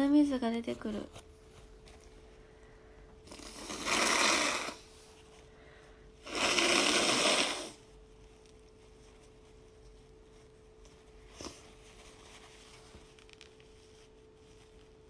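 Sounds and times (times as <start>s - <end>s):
woman blowing nose: 3.2s - 5.0s, 6.2s - 7.8s.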